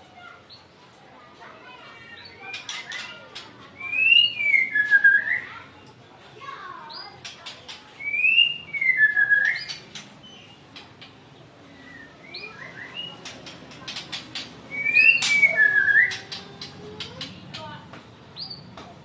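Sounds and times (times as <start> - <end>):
bird singing whistled phrases: 3.8 - 5.6, 8.0 - 10.5, 11.7 - 13.2, 14.7 - 16.4
sharp bird clicking notes: 13.1 - 17.8.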